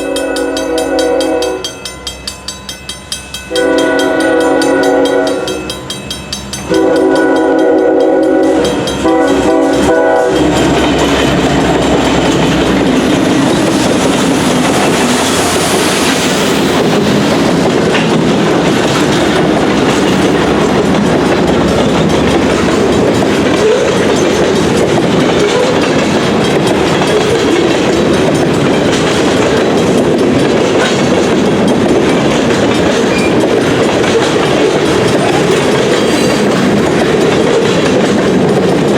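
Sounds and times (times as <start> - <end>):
train horn blasts: 0.0 - 1.9, 3.5 - 5.8, 6.7 - 10.7
train wheels rumbling on rails: 0.0 - 38.9.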